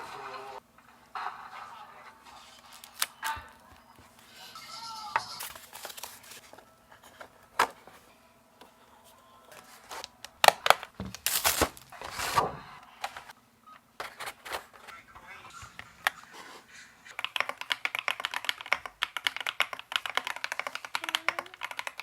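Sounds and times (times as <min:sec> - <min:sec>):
packaging rustling: 0:05.4 - 0:08.0, 0:09.5 - 0:13.3.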